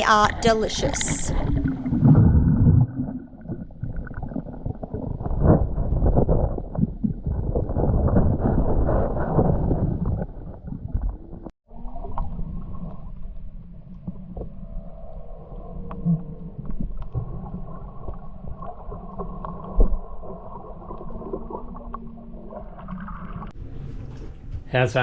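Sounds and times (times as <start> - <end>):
muffled underwater hum: 0.0 - 25.0
wind on microphone: 4.6 - 11.5.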